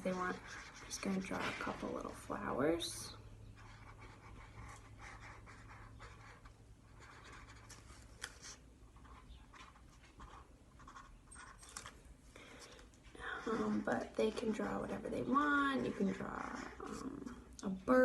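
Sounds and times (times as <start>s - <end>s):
marker drawing on cardboard: 0.0s - 2.0s, 13.4s - 17.4s.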